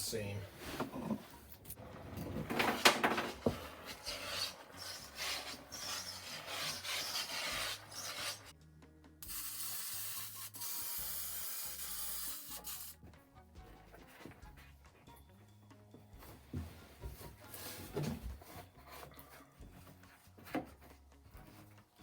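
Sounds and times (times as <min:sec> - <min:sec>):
carpet scratchy rubbing: 0:00.5 - 0:08.5.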